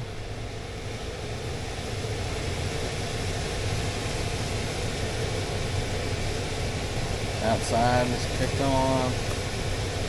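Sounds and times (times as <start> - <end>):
blower fan running: 0.0 - 10.0.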